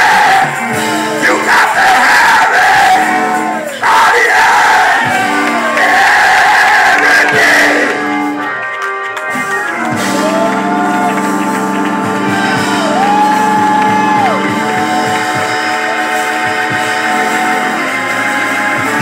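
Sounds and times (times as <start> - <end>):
steady drum beat: 0.0 - 8.4, 9.2 - 19.0.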